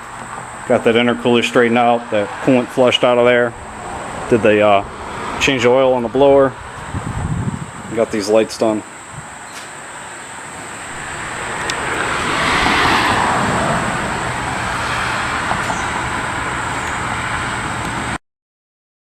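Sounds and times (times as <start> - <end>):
vehicle passing: 0.0 - 8.1, 10.1 - 18.2
steady low hum: 0.0 - 18.2.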